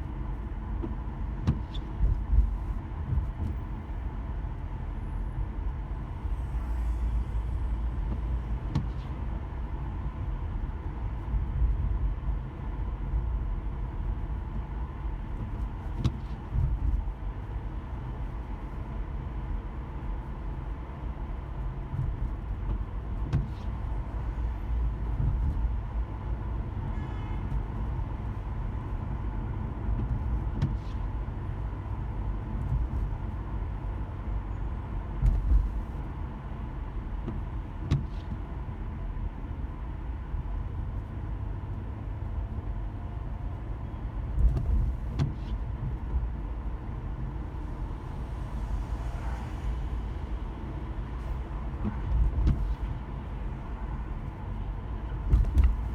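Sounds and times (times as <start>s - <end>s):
car engine and road noise: 0.0s - 55.9s
short knocks and thumps: 21.9s - 23.8s, 37.2s - 38.4s, 44.4s - 46.2s, 51.8s - 52.9s, 55.3s - 55.9s.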